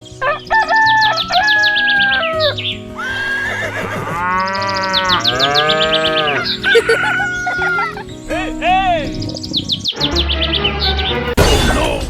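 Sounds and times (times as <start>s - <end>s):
background music: 0.0s - 12.0s
warbling animal calls: 3.0s - 8.0s.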